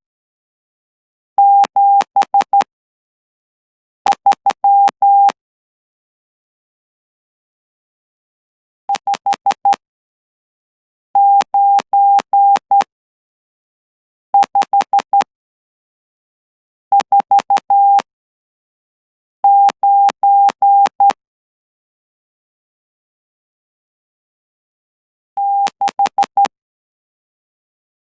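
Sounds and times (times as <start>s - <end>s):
morse code sidetone beeps: 1.4s - 2.7s, 4.1s - 5.4s, 11.2s - 12.9s, 17.0s - 18.1s, 19.5s - 21.2s, 25.4s - 26.5s.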